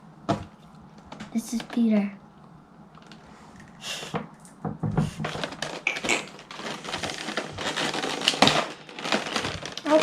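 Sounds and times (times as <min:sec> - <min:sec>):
packaging rustling: 0:05.2 - 0:10.0.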